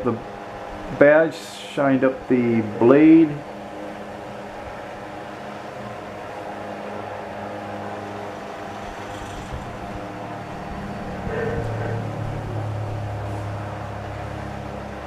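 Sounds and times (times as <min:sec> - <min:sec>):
electric fan motor hum: 0:00.0 - 0:15.0
rush of air from fan: 0:03.4 - 0:15.0.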